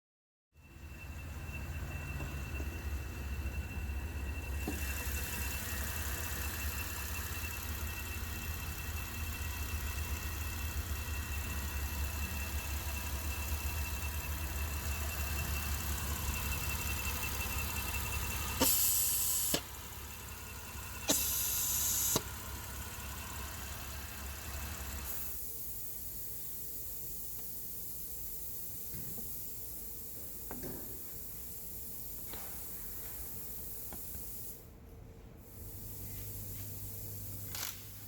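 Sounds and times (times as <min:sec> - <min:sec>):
car engine idling: 0:00.8 - 0:25.0.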